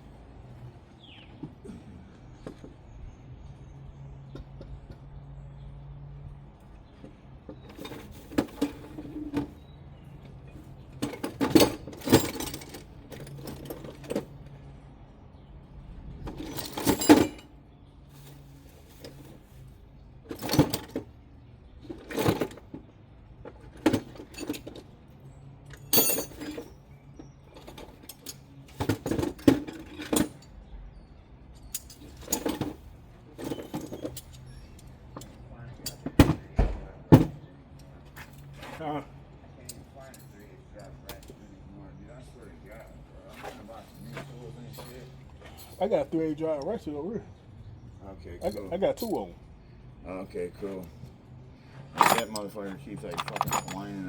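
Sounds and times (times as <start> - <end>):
metal hand tools clanking: 25.8 - 26.8, 51.9 - 54.0.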